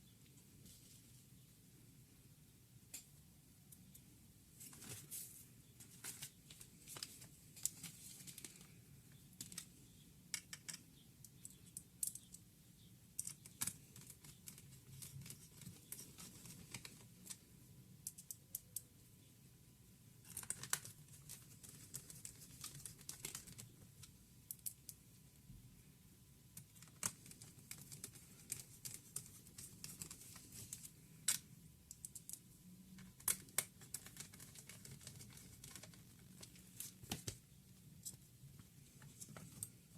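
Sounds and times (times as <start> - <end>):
small clicks and taps: 10.3 - 12.4, 26.6 - 37.4.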